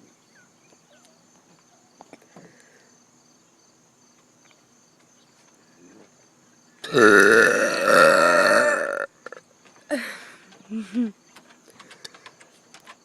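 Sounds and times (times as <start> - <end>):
faint clicks and rustles: 9.6 - 13.0.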